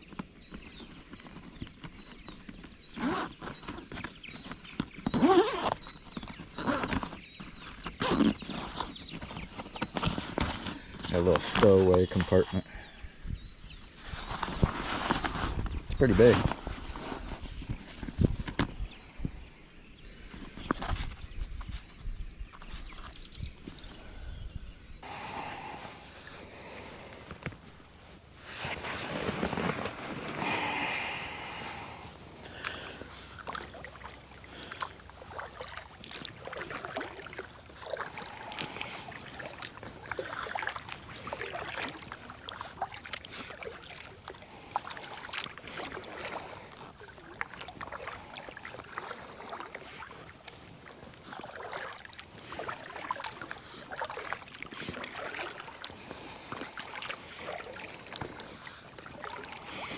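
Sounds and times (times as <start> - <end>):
paddle splashing in water: 25.0 - 59.9.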